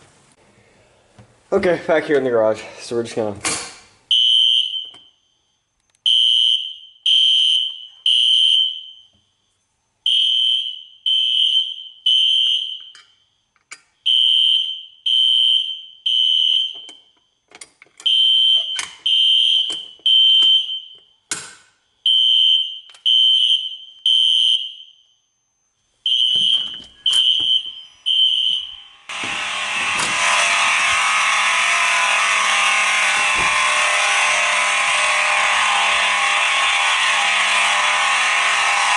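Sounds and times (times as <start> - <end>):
fire alarm high-pitched beeps: 4.1 - 21.2, 21.9 - 29.2
steady rushing noise: 29.1 - 38.9.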